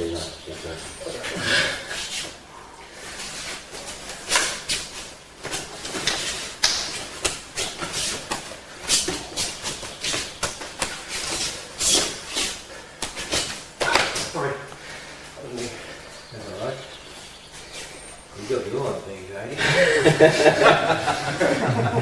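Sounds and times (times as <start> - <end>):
swishes and slaps of karate moves: 3.1 - 14.8.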